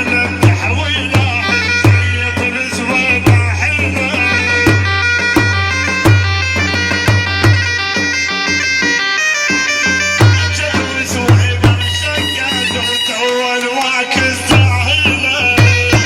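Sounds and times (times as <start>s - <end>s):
deep drum beating: 0.0s - 8.0s, 10.2s - 12.2s, 14.2s - 16.0s
reedy wind instrument melody: 0.0s - 16.0s.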